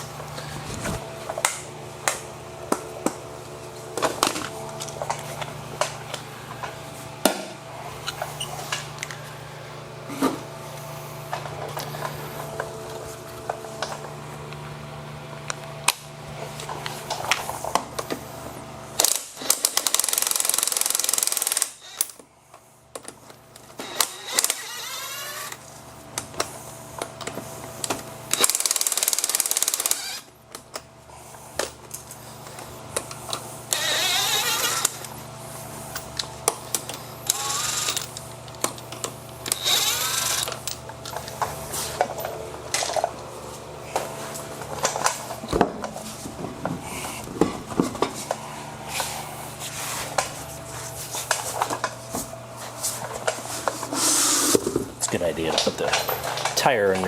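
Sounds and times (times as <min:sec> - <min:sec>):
steady hum: 0:00.0 - 0:57.0
impact wrench bursts: 0:19.0 - 0:22.2, 0:23.8 - 0:25.6, 0:28.2 - 0:30.3, 0:33.3 - 0:35.1, 0:36.8 - 0:38.2, 0:39.4 - 0:40.8.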